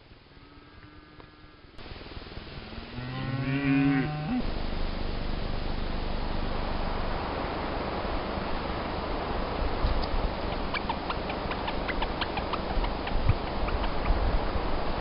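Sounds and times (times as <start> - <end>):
cow mooing: 0.4 - 1.7, 2.7 - 4.4
steady hiss: 1.7 - 15.0.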